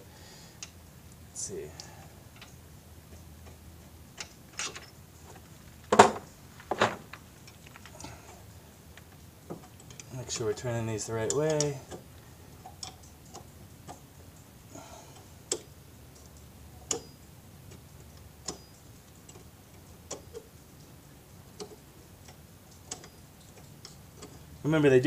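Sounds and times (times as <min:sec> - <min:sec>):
wrench clicking on bolts: 0:09.5 - 0:14.1.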